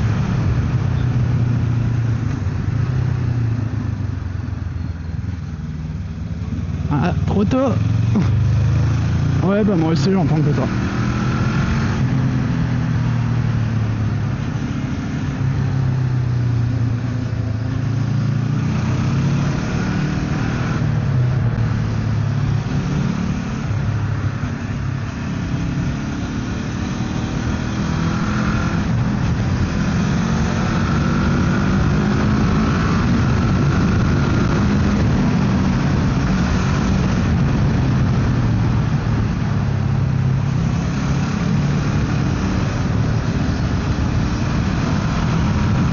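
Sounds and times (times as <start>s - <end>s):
wind noise: 10.7s - 45.9s.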